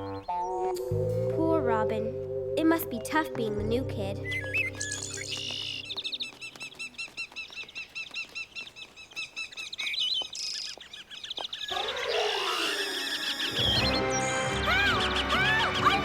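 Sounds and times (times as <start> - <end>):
cartoon birds chirping: 0.0 - 0.9, 4.2 - 16.0.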